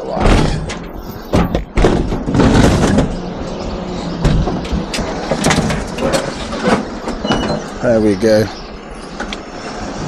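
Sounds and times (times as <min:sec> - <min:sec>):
scrap metal knocks and clatter: 0:00.2 - 0:03.3, 0:04.2 - 0:07.8.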